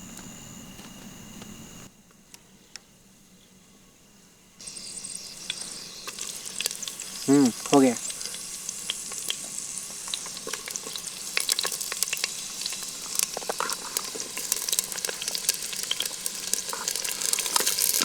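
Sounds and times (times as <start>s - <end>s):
hot oil sizzling and popping: 4.6s - 18.0s.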